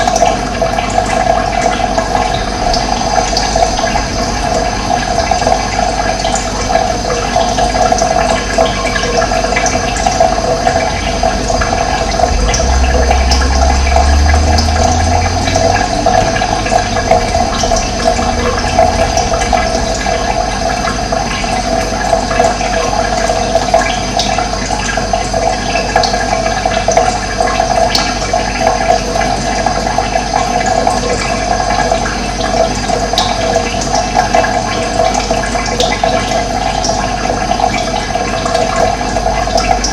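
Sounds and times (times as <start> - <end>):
water flowing: 0.0 - 39.9
low rumble: 9.9 - 23.1.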